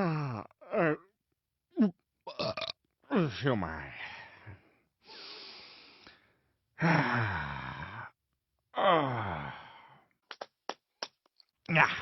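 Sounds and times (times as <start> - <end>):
man groaning sighs: 6.8 - 8.1, 8.8 - 10.0.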